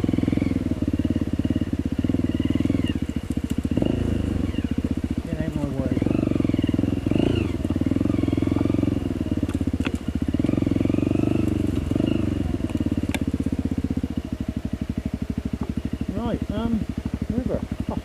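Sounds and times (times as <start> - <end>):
motorcycle engine at low revs: 0.0 - 18.0.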